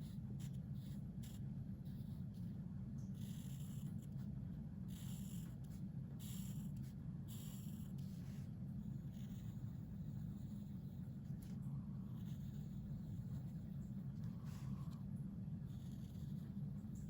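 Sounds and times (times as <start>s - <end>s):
steady low hum: 0.0s - 17.0s
pencil strokes on paper: 6.6s - 16.8s.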